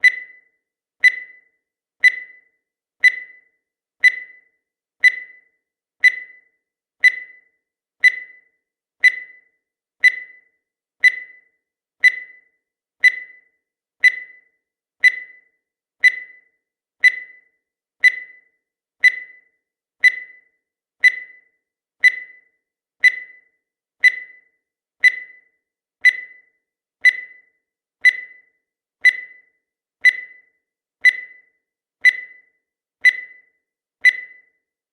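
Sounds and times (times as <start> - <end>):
countdown timer beeps: 0.0 - 34.7.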